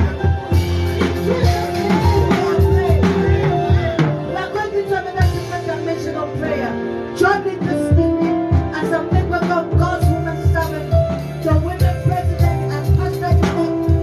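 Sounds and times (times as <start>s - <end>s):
steady drum beat: 0.0s - 6.0s, 7.4s - 14.0s
held keyboard chords: 0.0s - 14.0s
person singing: 0.0s - 14.0s.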